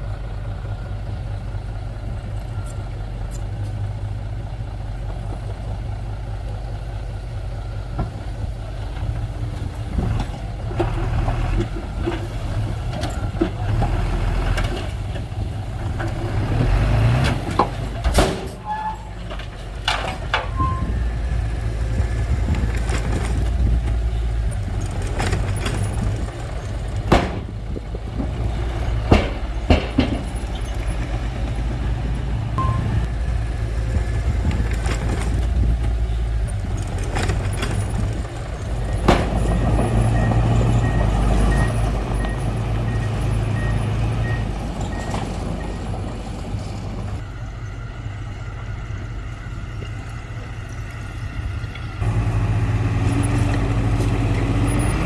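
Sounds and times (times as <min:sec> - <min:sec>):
diesel engine running: 0:00.0 - 0:55.0
metal knocks and clanks: 0:17.3 - 0:21.0, 0:24.8 - 0:31.6.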